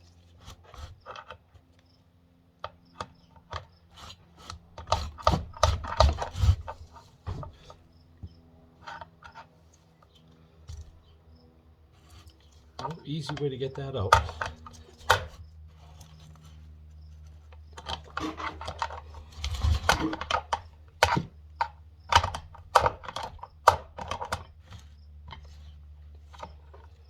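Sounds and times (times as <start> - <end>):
metal clicks and knocks of tools: 12.1 - 16.2.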